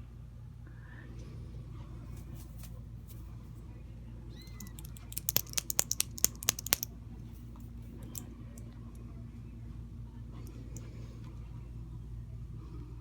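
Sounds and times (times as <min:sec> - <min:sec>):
kitten mewing: 0:04.3 - 0:05.9
sharp clicks: 0:04.6 - 0:06.9.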